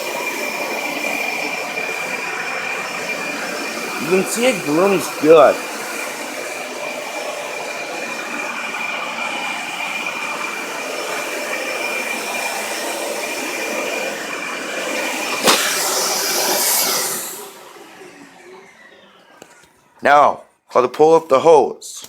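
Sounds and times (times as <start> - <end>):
vacuum cleaner running: 0.0 - 20.0
brief hiss: 15.4 - 17.0.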